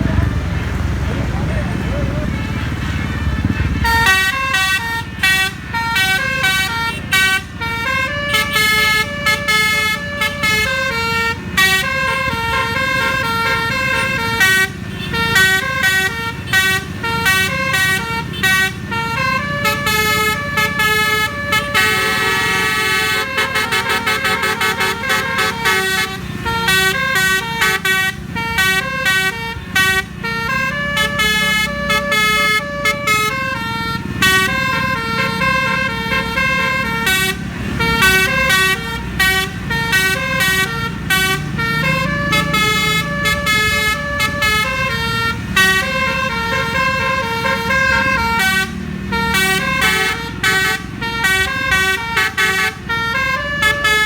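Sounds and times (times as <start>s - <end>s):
musical air horn melody: 2.2s - 54.0s.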